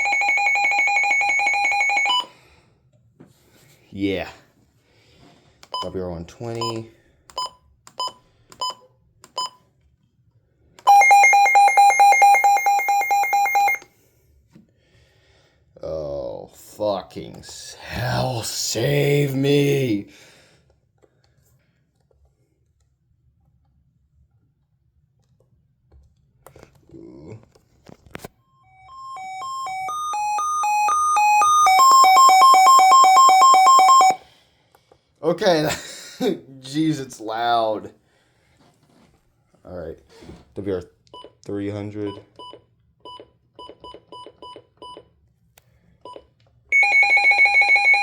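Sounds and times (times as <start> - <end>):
pulsing two-tone electronic alarm: 10.9 - 13.8, 28.6 - 34.2, 46.7 - 48.0.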